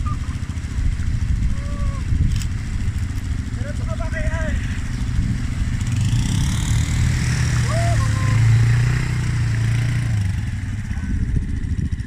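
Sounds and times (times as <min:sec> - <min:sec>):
atv engine running: 0:00.0 - 0:12.0.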